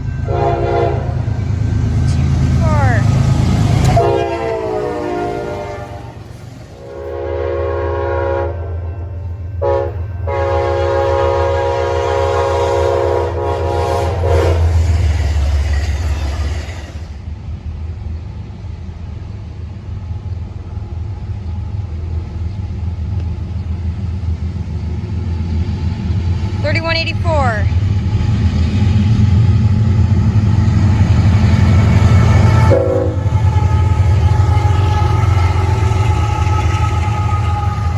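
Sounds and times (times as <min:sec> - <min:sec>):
passing train rumble: 0:00.0 - 0:37.9
train horn blasts: 0:00.2 - 0:01.3, 0:03.8 - 0:15.0, 0:32.3 - 0:37.9.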